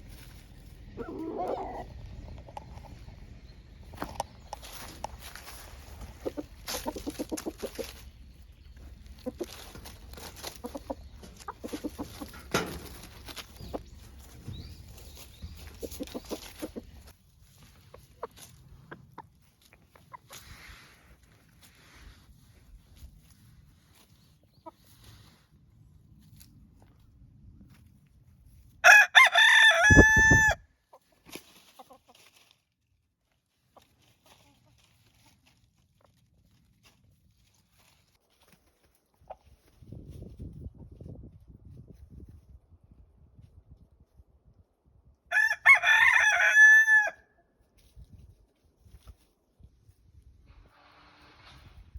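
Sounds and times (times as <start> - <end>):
chicken clucking: 0.8 - 4.7, 5.6 - 20.3, 24.2 - 25.2
rooster crowing: 28.8 - 30.6, 45.3 - 47.3.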